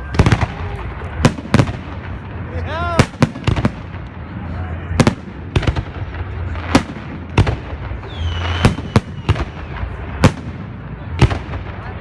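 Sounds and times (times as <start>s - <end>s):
fireworks bangs: 0.0s - 12.0s
firework whistle falling in pitch: 8.0s - 9.8s.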